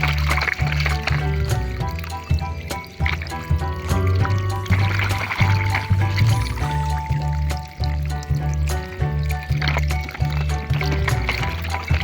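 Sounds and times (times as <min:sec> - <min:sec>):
background music with bass: 0:00.0 - 0:12.0.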